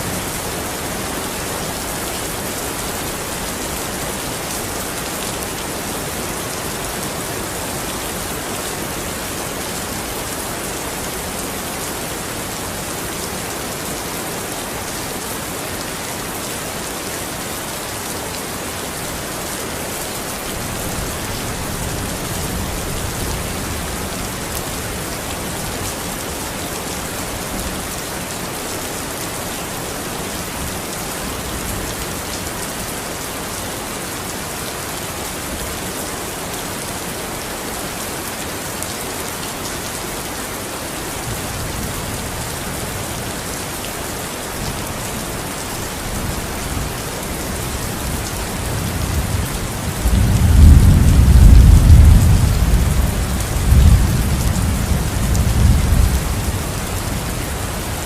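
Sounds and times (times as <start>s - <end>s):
rain falling: 0.0s - 58.0s
thunder rumbling: 48.8s - 56.6s.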